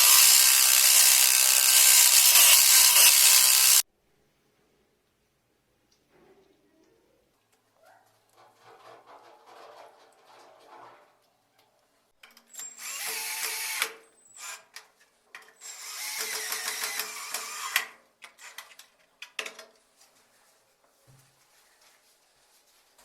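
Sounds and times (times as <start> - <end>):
power drill running: 0.0 - 3.8, 12.6 - 14.5, 15.6 - 17.8.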